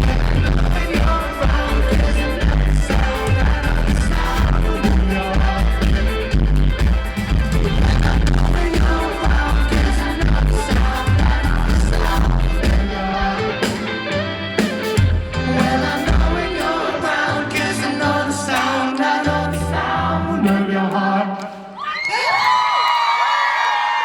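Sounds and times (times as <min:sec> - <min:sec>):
person singing: 0:00.0 - 0:06.4, 0:07.4 - 0:14.3, 0:15.3 - 0:21.8
bass: 0:00.0 - 0:16.6, 0:17.5 - 0:20.6
drums: 0:00.0 - 0:18.8
pop-rock band playing: 0:00.0 - 0:21.1.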